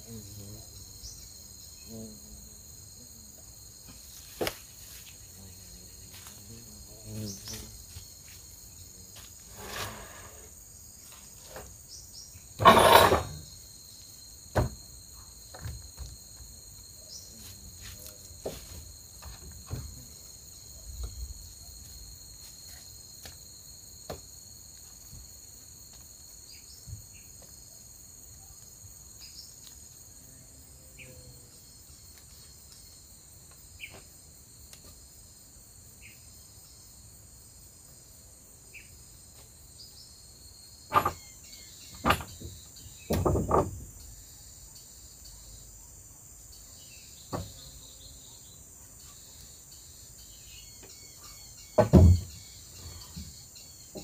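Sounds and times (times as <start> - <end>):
insects chirring: 0.0 - 54.0
sharp knocks: 40.9 - 41.2, 41.9 - 43.8, 51.8 - 52.4.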